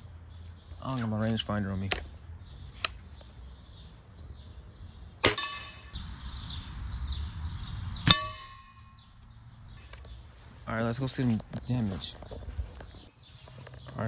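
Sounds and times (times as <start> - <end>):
air rifle shots: 5.2 - 6.0.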